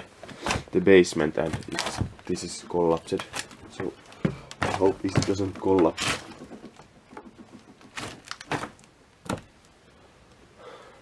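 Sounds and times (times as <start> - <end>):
dull knocks and thuds: 3.6 - 9.5.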